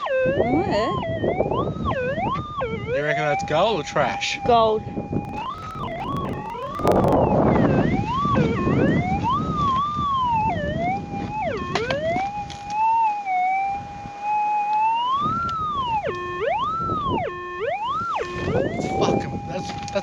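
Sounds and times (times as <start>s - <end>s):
rough noise burst: 5.3s - 7.2s.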